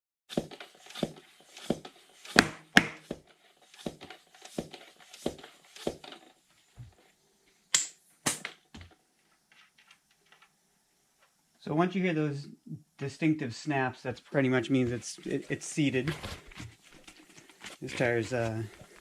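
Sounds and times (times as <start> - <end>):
bicycle pump strokes: 0.3 - 7.2, 14.4 - 19.0.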